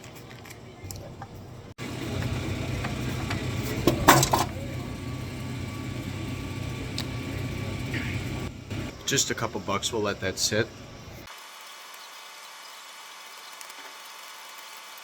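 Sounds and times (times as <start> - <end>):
vending machine humming: 0.6 - 11.3.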